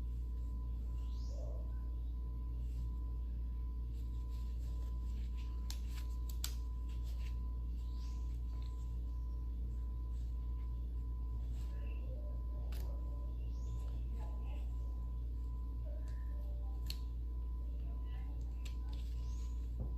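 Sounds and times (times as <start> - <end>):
low electrical hum: 0.0 - 19.9
faint high tone: 7.4 - 19.9.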